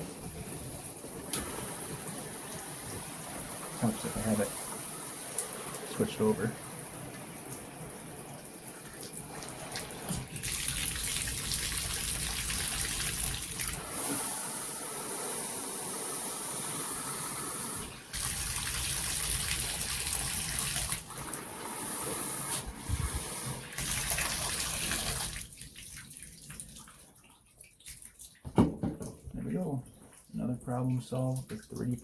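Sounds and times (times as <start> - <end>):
water running into bathtub: 0.0 - 32.0.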